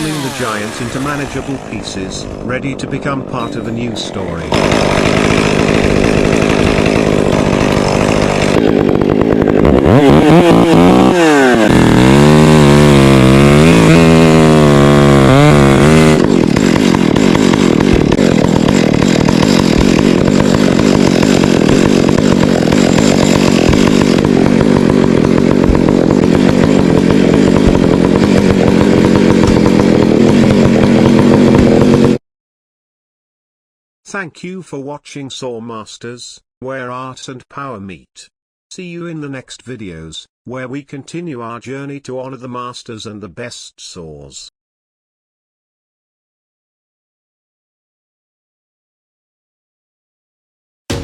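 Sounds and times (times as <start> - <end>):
chainsaw cutting tree: 0.0 - 32.2.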